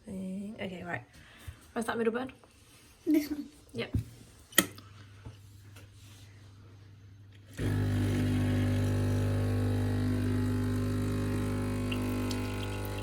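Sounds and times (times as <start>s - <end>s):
espresso machine pump buzzing: 7.5s - 13.0s.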